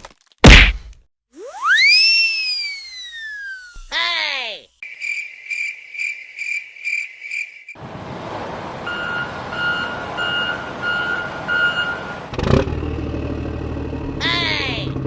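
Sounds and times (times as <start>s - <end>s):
vehicle running: 7.8s - 15.0s
low reversing beeps: 8.8s - 12.2s.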